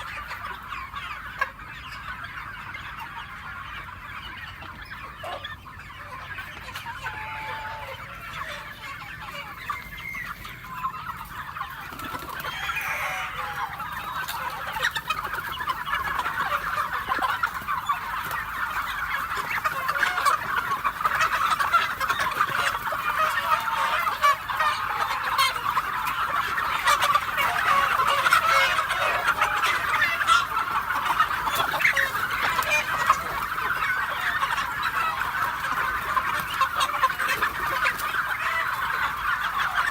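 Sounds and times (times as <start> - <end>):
chickens clucking: 0.0 - 39.9.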